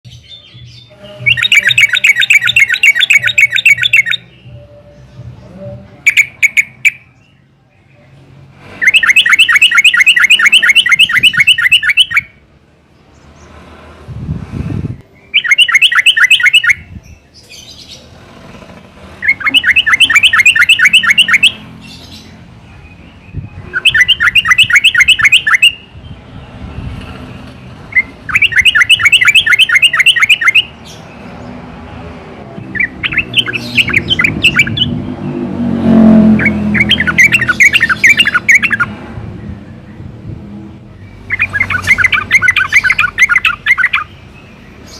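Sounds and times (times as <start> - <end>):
bird chattering calls: 1.2 - 4.3, 8.8 - 12.3, 15.3 - 16.8, 19.2 - 22.3, 27.9 - 31.0, 32.7 - 35.0, 36.3 - 38.9, 41.2 - 44.9.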